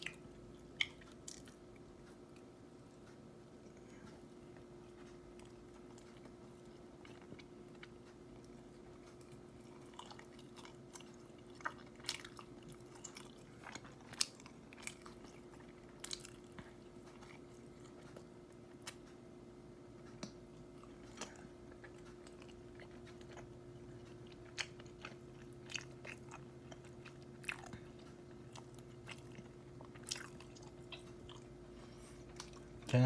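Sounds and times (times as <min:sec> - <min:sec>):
person chewing with mouth clicks: 0:00.0 - 0:19.2, 0:20.0 - 0:31.5, 0:32.1 - 0:32.9
faint steady hum: 0:00.0 - 0:33.0.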